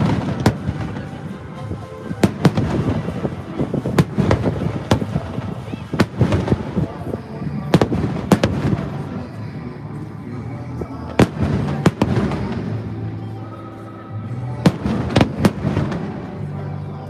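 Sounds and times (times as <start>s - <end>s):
fireworks bangs: 0.0s - 9.4s, 11.1s - 12.9s, 14.6s - 16.5s.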